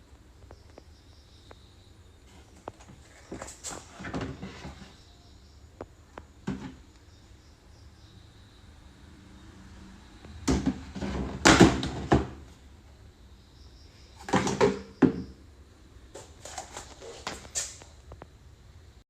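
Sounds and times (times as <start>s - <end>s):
clattering knocks of lids: 14.2s - 15.3s.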